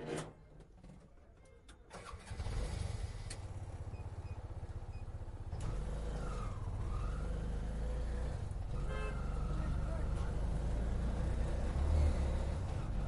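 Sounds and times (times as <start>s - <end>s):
auto rickshaw engine putter: 1.9s - 7.7s.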